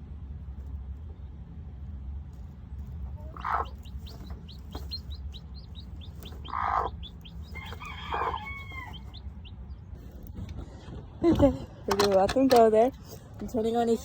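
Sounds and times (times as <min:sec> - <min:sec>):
chicks peeping: 0:02.8 - 0:11.6
hen calling: 0:03.2 - 0:09.6.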